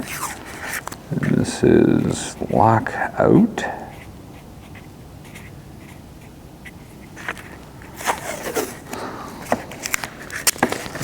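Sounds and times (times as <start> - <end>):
scraping rustle: 0.0 - 2.4, 6.6 - 11.0
wires handling ticks: 0.0 - 11.0.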